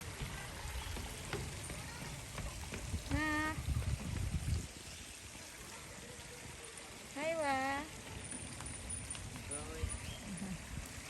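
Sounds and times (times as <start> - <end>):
outdoor background hiss: 0.0 - 11.0
wind on microphone: 2.4 - 5.2.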